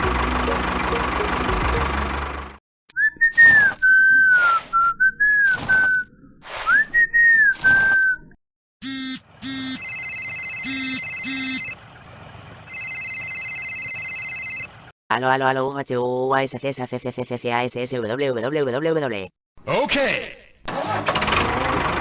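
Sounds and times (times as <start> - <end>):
gliding whistled tone: 3.0 - 8.4
short electronic beeps: 10.7 - 11.8.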